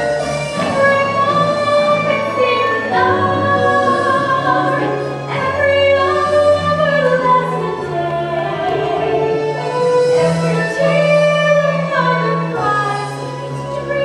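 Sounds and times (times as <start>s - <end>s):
woman singing a ballad: 0.0s - 9.4s
instrumental accompaniment: 0.0s - 14.0s.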